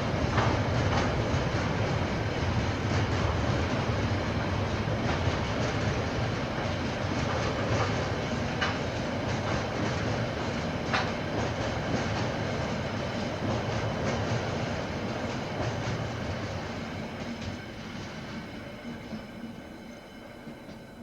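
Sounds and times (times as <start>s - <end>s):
train wheels clicking over rail joints: 5.0s - 18.4s.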